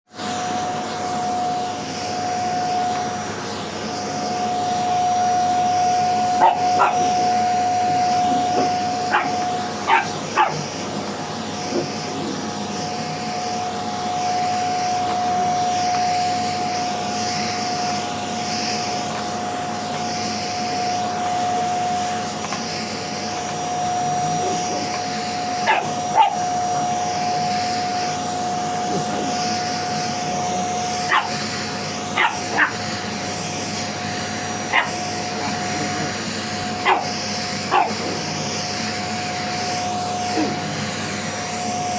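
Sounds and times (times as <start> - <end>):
vacuum cleaner running: 0.1 - 41.9
dog barking: 6.3 - 7.4, 8.2 - 10.7, 25.6 - 26.6, 31.0 - 32.9, 34.6 - 35.6, 36.7 - 38.3.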